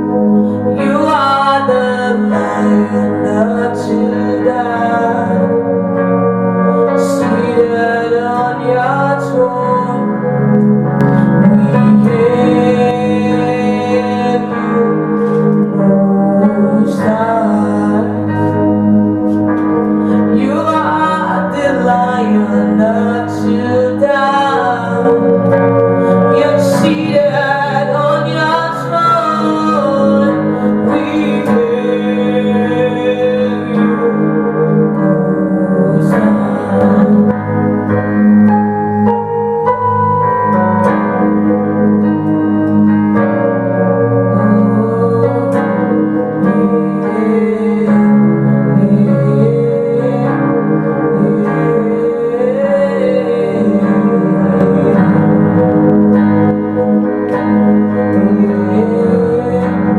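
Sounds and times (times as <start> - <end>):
person singing long wavering notes: 0.0 - 59.9
sustained keyboard chords: 0.0 - 59.9.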